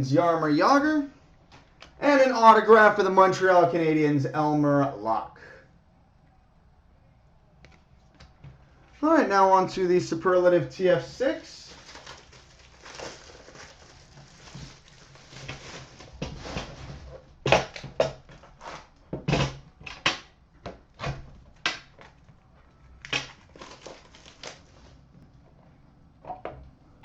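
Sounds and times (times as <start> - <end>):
plastic wrapping crinkling and tearing: 11.6 - 19.4, 21.5 - 25.1.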